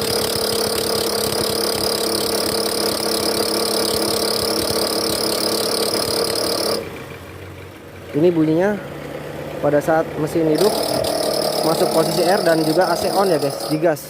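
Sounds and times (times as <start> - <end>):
drive belt high squeal: 0.0 - 6.9, 10.4 - 14.0
engine rough growl: 0.0 - 14.0.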